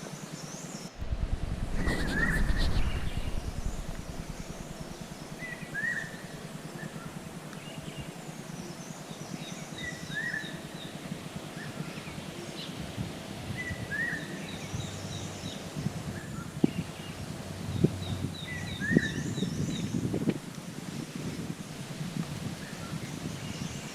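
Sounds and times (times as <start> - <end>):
low outdoor rumble: 0.9 - 9.7.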